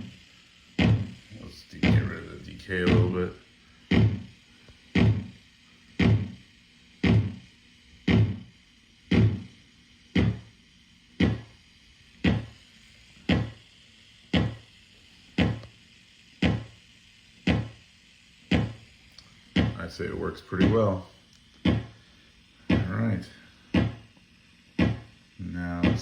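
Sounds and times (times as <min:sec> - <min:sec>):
electronic kick drum thumps: 0:00.0 - 0:00.2, 0:00.8 - 0:03.3, 0:03.9 - 0:05.4, 0:06.0 - 0:10.5, 0:11.2 - 0:11.6, 0:12.2 - 0:12.6, 0:13.2 - 0:13.6, 0:14.3 - 0:14.7, 0:15.4 - 0:15.7, 0:16.4 - 0:16.8, 0:17.4 - 0:17.8, 0:18.5 - 0:18.8, 0:19.5 - 0:19.9, 0:21.6 - 0:22.0, 0:22.7 - 0:23.0, 0:23.7 - 0:24.0, 0:24.8 - 0:25.2, 0:25.8 - 0:26.0.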